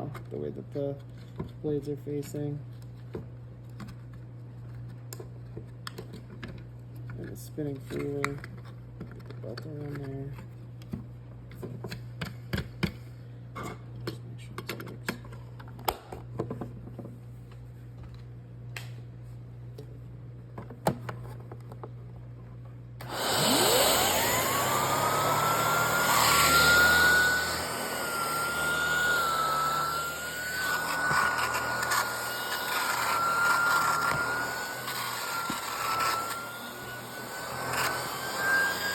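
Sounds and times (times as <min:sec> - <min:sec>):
vacuum cleaner motor whine: 0:23.0 - 0:38.9.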